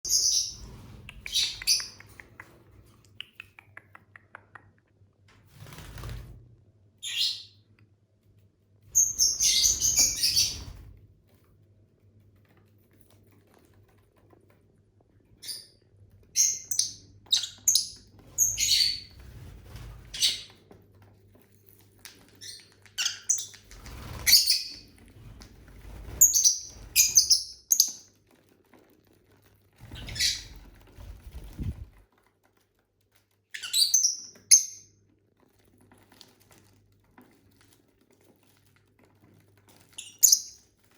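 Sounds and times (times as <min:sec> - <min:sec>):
lovebirds chirping and squawking: 0:00.1 - 0:02.5, 0:07.0 - 0:07.6, 0:08.9 - 0:10.9, 0:16.4 - 0:20.6, 0:22.4 - 0:28.1, 0:29.8 - 0:31.9, 0:33.6 - 0:34.9, 0:40.0 - 0:40.6.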